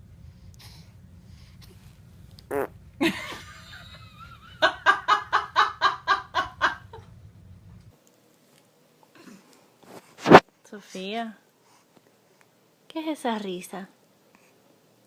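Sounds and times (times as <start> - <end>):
baby farting: 2.5 - 2.7
person laughing: 3.0 - 7.1.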